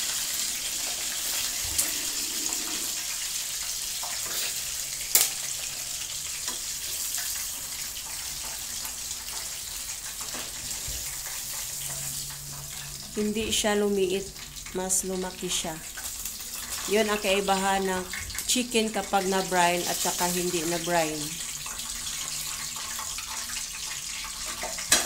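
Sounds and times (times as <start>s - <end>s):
chicken sizzling in hot oil: 0.0s - 25.0s.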